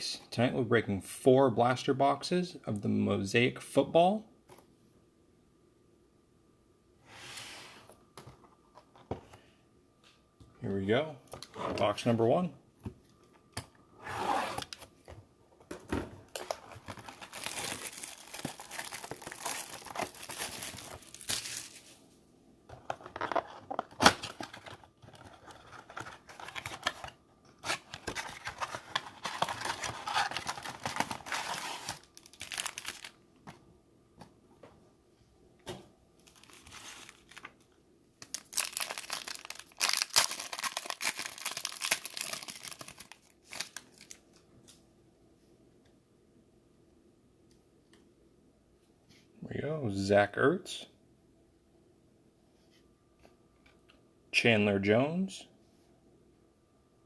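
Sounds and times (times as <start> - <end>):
plastic wrapping tearing and crinkling: 16.3 - 22.0, 27.6 - 33.2, 36.2 - 37.6, 38.2 - 44.3.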